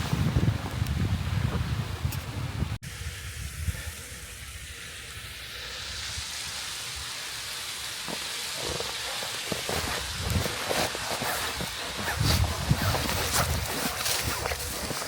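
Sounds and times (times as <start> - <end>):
rushing water hiss: 2.8 - 15.0
footsteps crunching in snow: 8.0 - 15.0.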